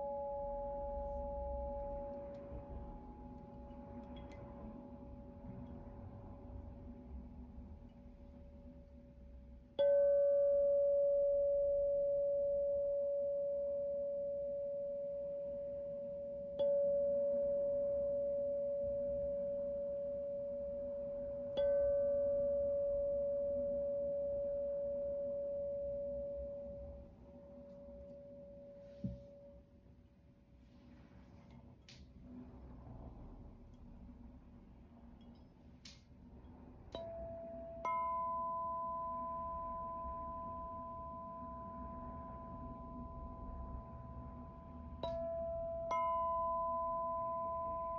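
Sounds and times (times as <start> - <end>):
tuning fork clang: 0.0 - 5.8, 9.7 - 29.7, 36.9 - 47.9
tuning fork steady tone: 0.0 - 30.0, 36.4 - 47.9.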